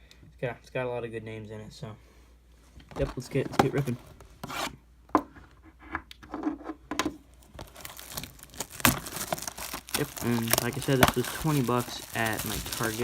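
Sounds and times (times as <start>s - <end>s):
packaging tearing and crinkling: 7.4s - 13.0s.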